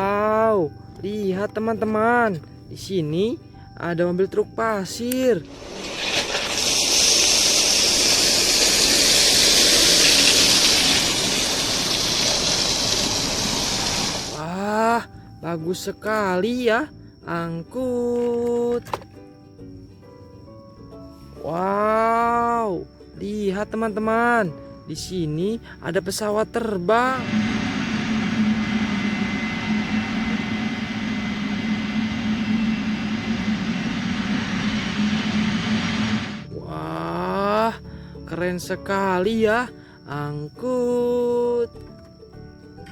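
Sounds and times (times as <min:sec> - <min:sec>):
loud rushing hiss: 0:05.4 - 0:14.5, 0:27.1 - 0:36.5
jet engine running: 0:05.5 - 0:14.4, 0:27.1 - 0:36.5.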